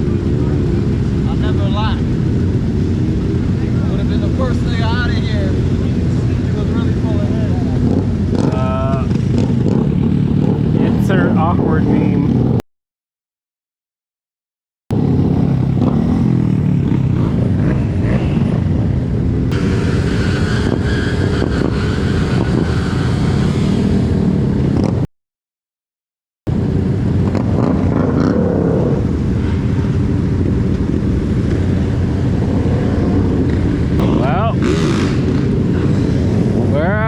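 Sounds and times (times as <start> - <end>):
road and wind noise: 0.0 - 12.6, 14.9 - 25.1, 26.5 - 37.0
vehicle engine running: 14.9 - 24.8, 28.8 - 36.9.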